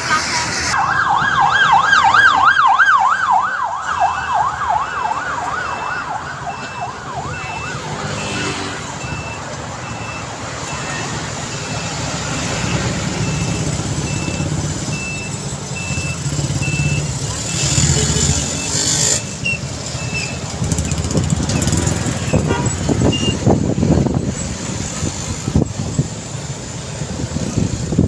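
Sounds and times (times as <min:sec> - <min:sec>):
street traffic rumble: 0:00.0 - 0:28.0
emergency siren yelping: 0:00.6 - 0:17.6
high beep: 0:09.0 - 0:17.8.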